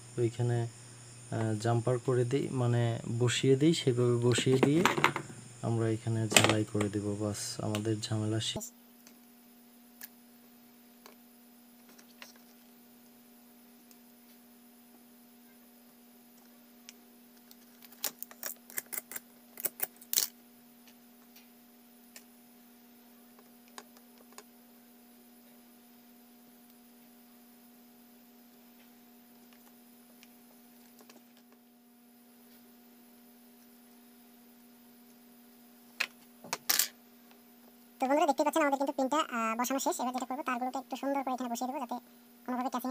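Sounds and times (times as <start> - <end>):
steady hum: 0.0 - 42.9.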